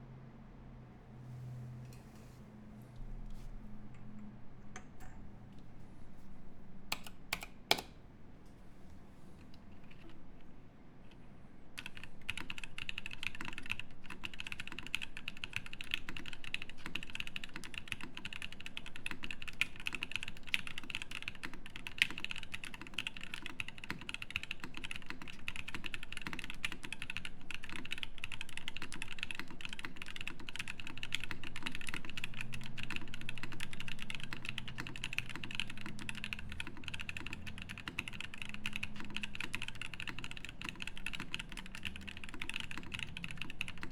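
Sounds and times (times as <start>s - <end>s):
fast typing on mechanical keyboard: 11.8s - 43.9s.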